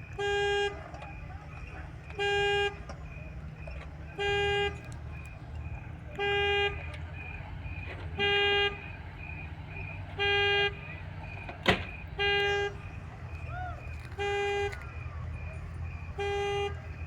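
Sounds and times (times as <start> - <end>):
engine rumble: 0.0 - 17.0
vehicle horn blasts: 0.1 - 3.0, 4.1 - 4.9, 6.1 - 7.0, 8.2 - 8.9, 10.1 - 11.0, 12.0 - 17.0.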